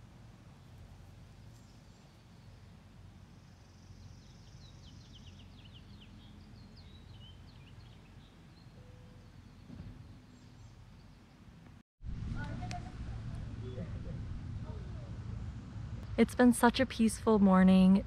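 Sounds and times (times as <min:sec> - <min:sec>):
small bird chirping: 0:03.4 - 0:11.4
faint low rumble: 0:11.6 - 0:18.0.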